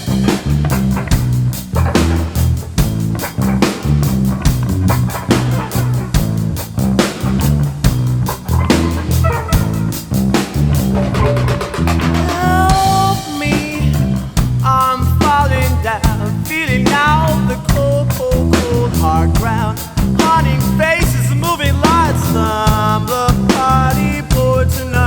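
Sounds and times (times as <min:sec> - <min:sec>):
wavering lead line: 0:00.0 - 0:14.4
rock music: 0:00.0 - 0:25.0.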